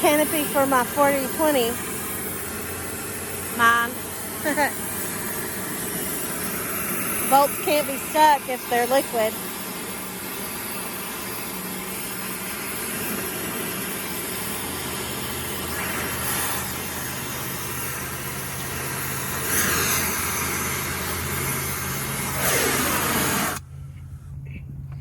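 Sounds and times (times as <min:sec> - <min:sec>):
engine idling: 0:00.0 - 0:25.0
loud rushing bursts: 0:18.3 - 0:23.6.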